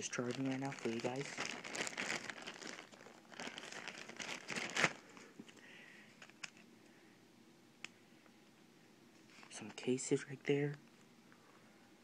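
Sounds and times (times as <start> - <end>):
packaging rustling and crinkling: 0.0 - 5.6.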